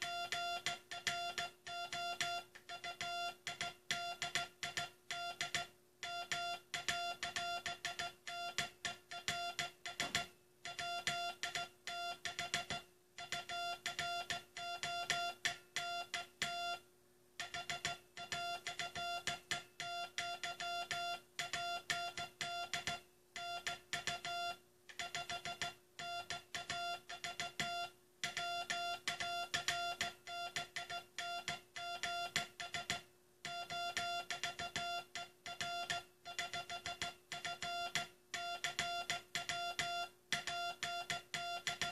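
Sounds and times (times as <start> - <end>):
morse code beeps: 0.0 - 16.8, 17.4 - 41.9
faint steady hum: 0.0 - 41.9.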